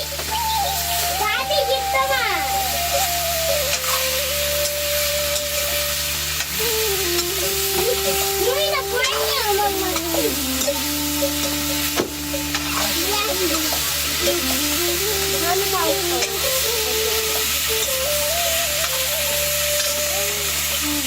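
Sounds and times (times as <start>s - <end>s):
food sizzling in a pan: 0.0s - 21.0s
slow melody: 0.0s - 21.0s
utensil knocks: 12.0s - 12.2s.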